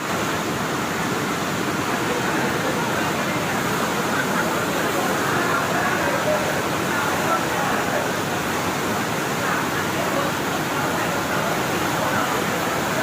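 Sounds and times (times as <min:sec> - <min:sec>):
floodwater rushing: 0:00.0 - 0:13.0.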